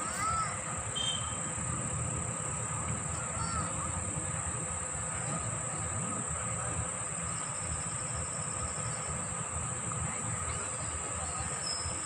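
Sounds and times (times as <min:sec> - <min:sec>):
insects droning: 0:00.0 - 0:12.0
short chirping calls: 0:01.0 - 0:01.5.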